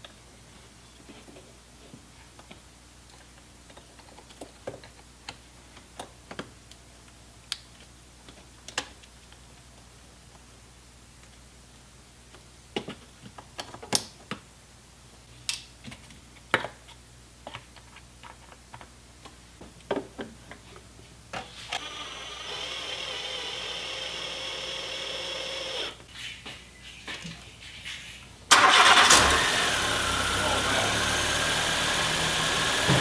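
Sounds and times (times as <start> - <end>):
small motor whirring: 21.8 - 26.0.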